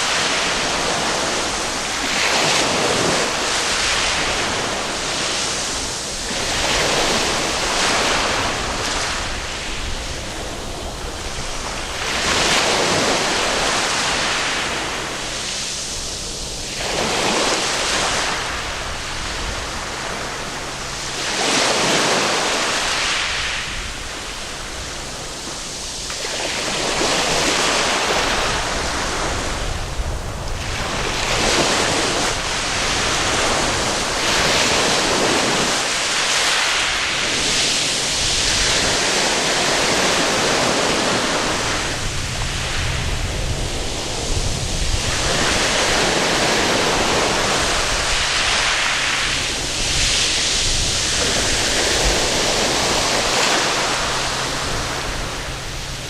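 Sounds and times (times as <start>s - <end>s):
waves breaking on a beach: 0.0s - 56.0s.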